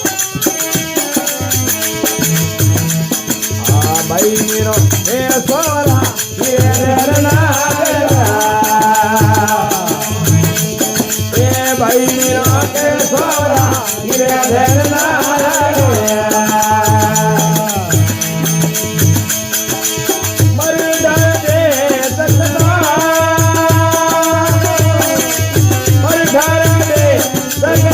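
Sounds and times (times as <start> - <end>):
rattle percussion ticking: 0.0 - 27.9
person singing: 20.6 - 27.9.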